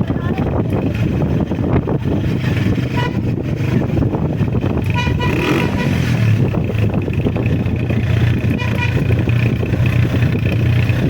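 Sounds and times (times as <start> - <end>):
motorcycle engine running: 0.0 - 11.0
vehicle horn tooting: 2.9 - 3.3, 4.8 - 6.1, 8.5 - 9.2.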